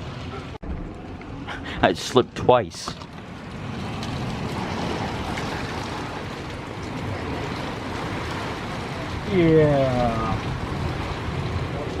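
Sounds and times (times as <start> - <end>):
strong wind gusts: 3.1 - 12.0.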